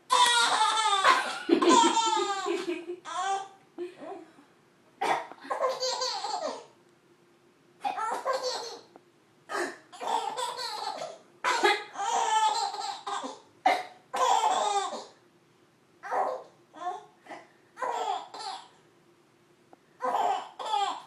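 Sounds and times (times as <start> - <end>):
baby belly-laughing: 0.1 - 3.5, 5.5 - 6.7, 7.9 - 8.9, 9.9 - 13.5, 14.1 - 15.2, 17.8 - 18.7, 20.0 - 21.0
woman mock coughing: 1.0 - 2.0, 11.5 - 11.9.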